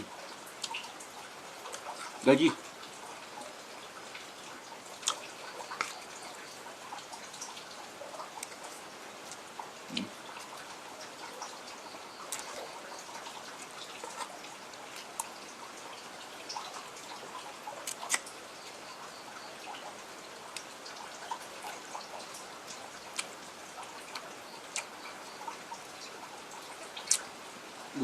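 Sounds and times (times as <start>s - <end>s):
person chewing: 5.0s - 6.0s, 14.0s - 14.5s, 17.8s - 18.2s, 23.1s - 23.3s, 27.0s - 27.3s
wet mouth clicks and smacks: 5.0s - 6.0s, 23.1s - 23.3s, 27.0s - 27.3s.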